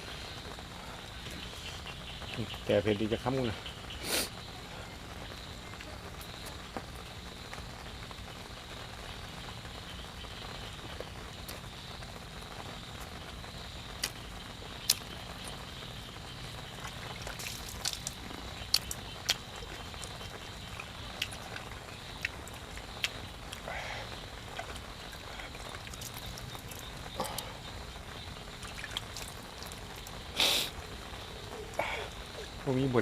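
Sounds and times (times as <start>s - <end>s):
background hiss: 0.0s - 33.0s
eating crunches: 14.8s - 15.6s, 16.8s - 27.6s, 28.5s - 30.8s.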